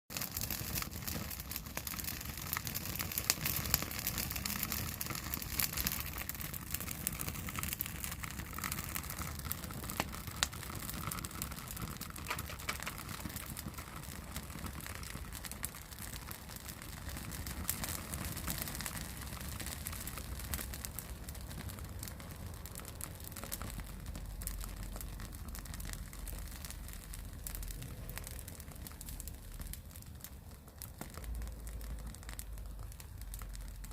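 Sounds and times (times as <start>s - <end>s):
wood fire crackling and popping: 0.1s - 33.9s.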